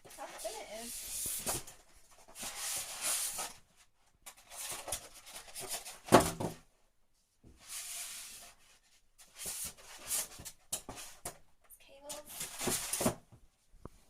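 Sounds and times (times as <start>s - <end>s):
cardboard packaging rustling: 4.3s - 6.6s, 12.3s - 13.2s.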